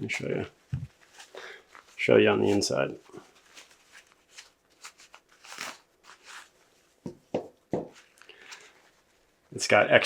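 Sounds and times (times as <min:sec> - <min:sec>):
fabric rustling and crinkling: 0:00.0 - 0:07.1, 0:07.9 - 0:10.0.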